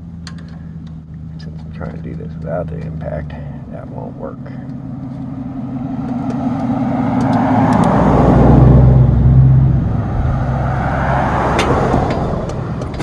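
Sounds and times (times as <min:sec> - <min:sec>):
vehicle driving past: 0:04.4 - 0:13.0.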